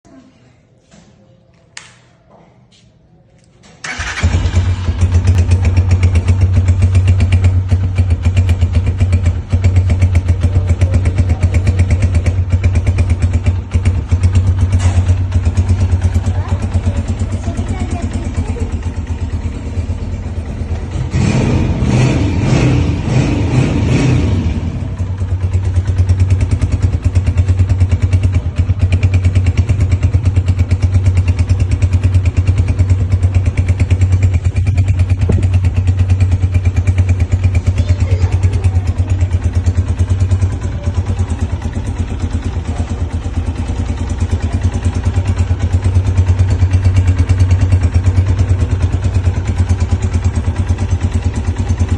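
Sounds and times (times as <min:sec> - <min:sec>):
motorcycle engine with throttle blips: 0:03.8 - 0:51.9.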